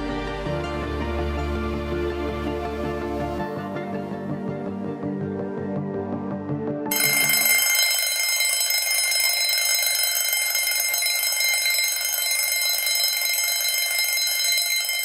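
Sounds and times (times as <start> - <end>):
background music: 0.0 - 8.1
alarm clock ringing: 6.9 - 15.0.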